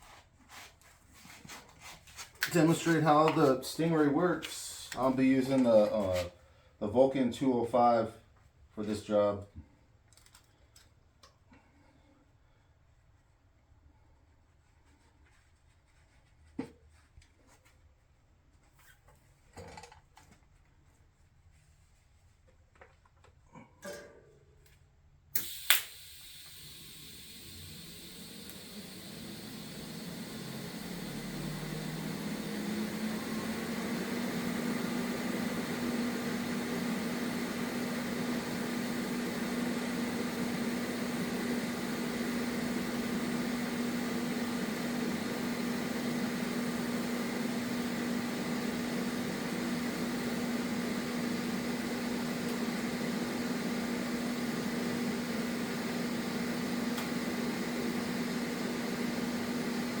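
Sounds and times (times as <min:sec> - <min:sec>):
welding arc buzzing: 0:25.4 - 1:00.0.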